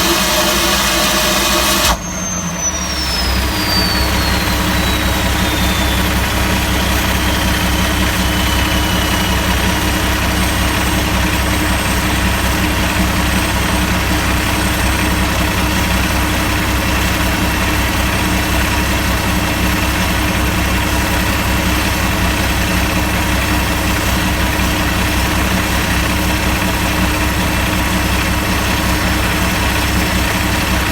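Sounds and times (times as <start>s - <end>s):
faint high whine falling in pitch: 0.0s - 16.7s
diesel engine idling: 0.0s - 30.9s.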